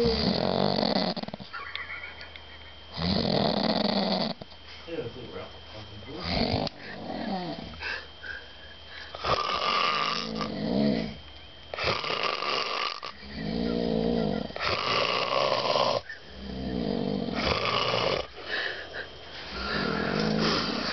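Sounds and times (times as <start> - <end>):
man snoring: 0.0 - 1.4, 3.0 - 4.4, 6.2 - 8.0, 9.2 - 11.2, 11.8 - 20.9.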